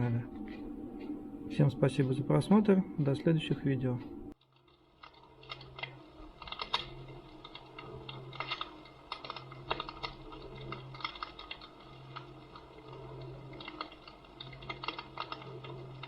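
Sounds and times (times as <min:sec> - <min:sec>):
low steady hum: 0:00.0 - 0:16.0
fire crackling and popping: 0:04.3 - 0:16.0.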